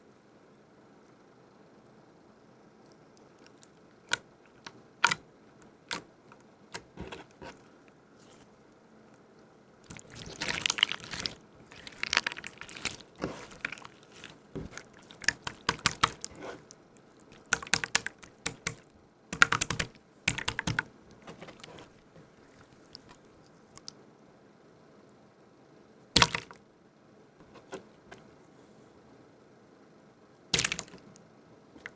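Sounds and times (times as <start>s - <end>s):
slime squelching and crackling: 9.8s - 23.9s, 30.6s - 31.1s.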